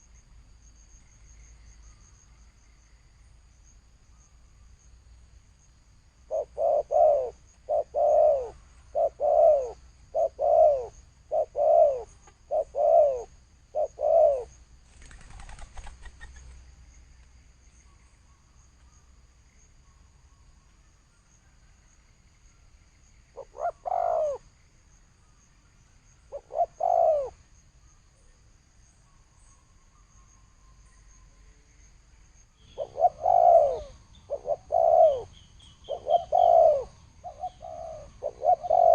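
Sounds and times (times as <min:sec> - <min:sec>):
dove cooing: 0:06.3 - 0:16.5, 0:23.4 - 0:24.5, 0:26.3 - 0:27.4, 0:32.7 - 0:38.9.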